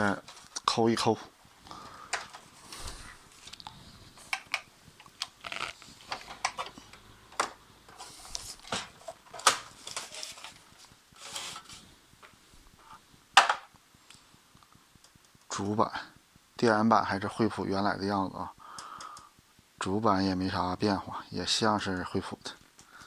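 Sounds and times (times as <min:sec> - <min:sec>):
plastic cover clicking and snapping: 0:04.3 - 0:06.8, 0:08.6 - 0:10.6.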